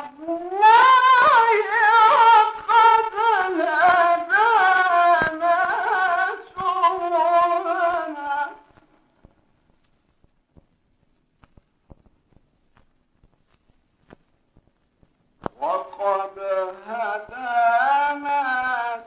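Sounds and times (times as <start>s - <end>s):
man reciting melodically: 0.0s - 8.8s, 15.4s - 19.0s
faint clicks: 8.6s - 15.7s.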